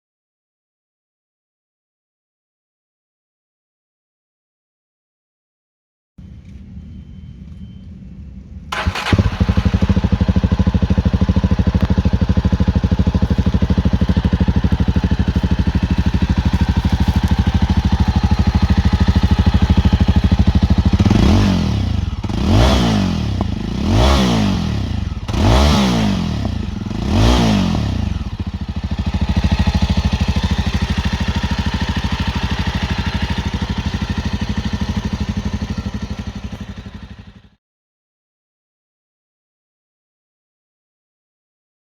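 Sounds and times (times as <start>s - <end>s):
motorcycle engine idling and revving: 6.2s - 37.6s.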